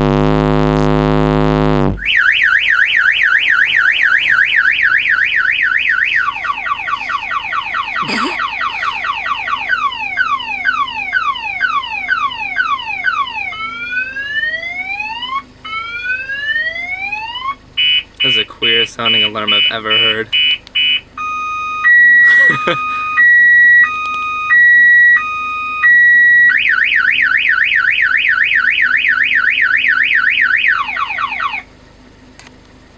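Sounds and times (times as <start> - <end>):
deep subwoofer bass note: 0.0 - 2.0
car alarm siren: 2.0 - 8.0, 9.3 - 18.0, 19.1 - 31.7.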